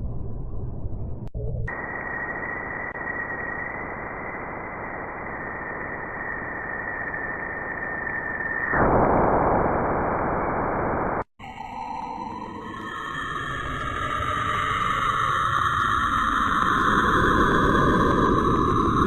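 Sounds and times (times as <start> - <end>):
high whistle tone: 1.7 - 9.0
radio static hiss: 1.7 - 11.3.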